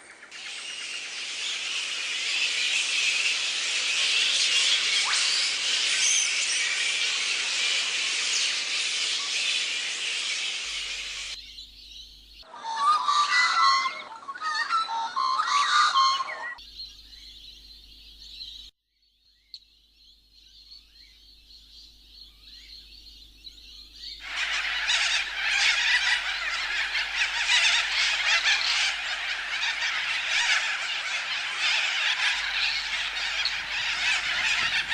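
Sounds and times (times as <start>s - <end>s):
scattered chirps: 0.3s - 11.4s, 24.2s - 34.9s
dense chorus of animal calls: 24.2s - 34.9s
loud honking bird calls: 24.2s - 34.9s.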